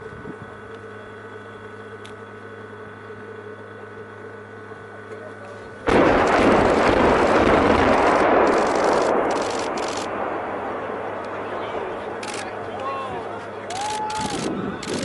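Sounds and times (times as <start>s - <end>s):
low background hum: 0.0s - 15.0s
crackling volley of demolition blasts: 5.8s - 15.0s.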